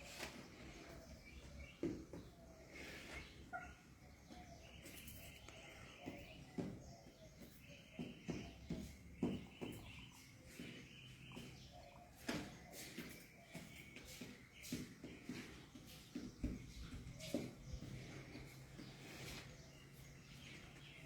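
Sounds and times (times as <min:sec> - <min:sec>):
faint bird chirping: 0:00.0 - 0:21.0.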